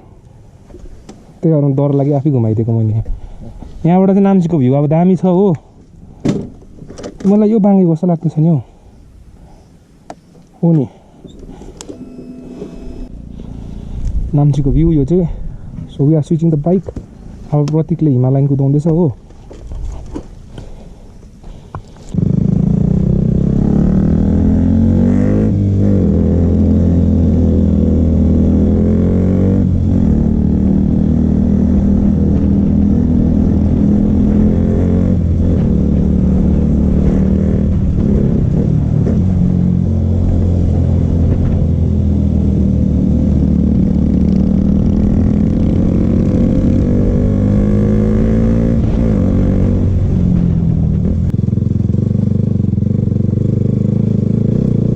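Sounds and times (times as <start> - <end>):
motorcycle engine revving: 22.1 - 54.9.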